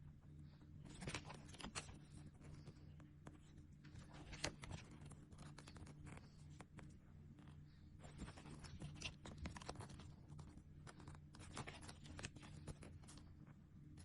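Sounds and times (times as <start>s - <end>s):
faint low hum: 0.0s - 14.0s
sticker packaging crinkling: 3.8s - 6.9s, 8.0s - 13.3s.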